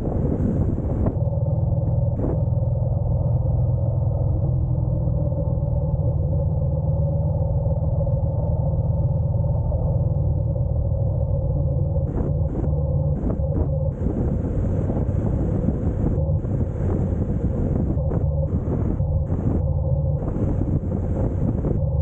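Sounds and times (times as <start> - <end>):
wind noise gusts: 0.0 - 2.8, 11.9 - 22.0.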